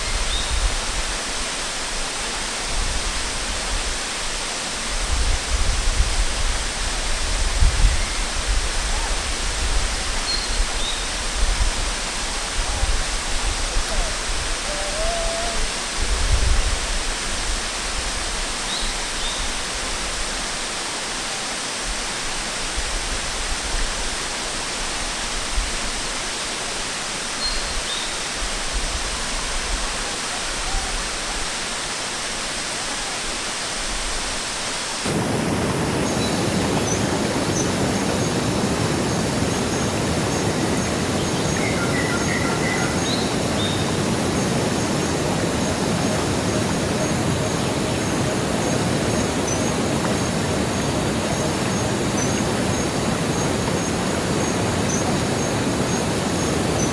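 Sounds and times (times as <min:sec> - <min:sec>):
waterfall rushing: 0:00.0 - 0:56.9.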